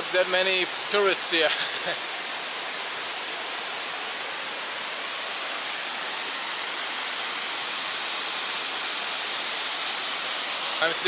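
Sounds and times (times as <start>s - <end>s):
rush of falling water: 0.0s - 11.0s.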